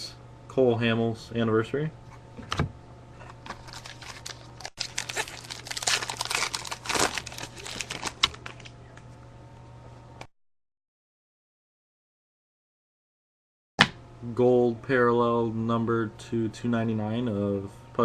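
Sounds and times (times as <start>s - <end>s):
foil wrapper crinkling: 3.3s - 8.7s.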